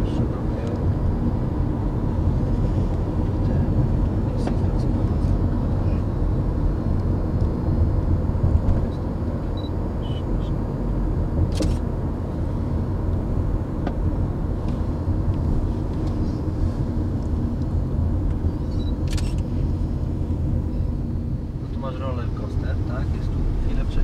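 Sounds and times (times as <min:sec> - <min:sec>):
car engine and road rumble: 0:00.0 - 0:24.0.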